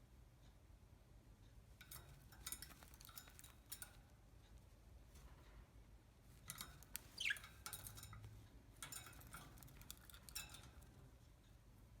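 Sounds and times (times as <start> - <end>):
budgerigar chirp: 7.2 - 7.4.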